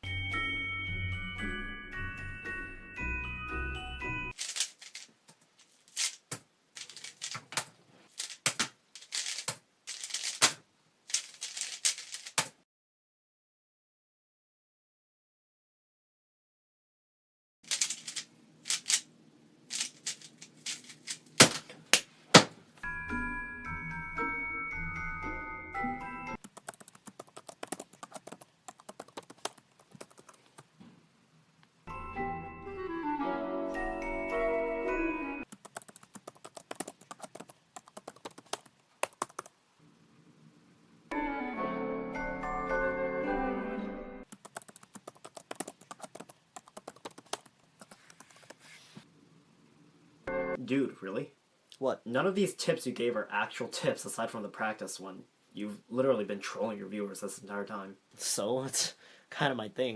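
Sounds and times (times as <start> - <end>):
glockenspiel-like music: 0.0 - 4.4, 22.8 - 26.4, 31.9 - 35.4, 41.2 - 44.2, 50.3 - 50.6
puzzle cube clicking turns: 4.4 - 5.1, 5.9 - 12.6, 17.7 - 19.1, 19.7 - 21.6, 26.4 - 30.7, 35.4 - 39.6, 44.2 - 48.6
speedcube plastic clicks: 17.7 - 19.0
mallet percussion music: 22.8 - 26.4.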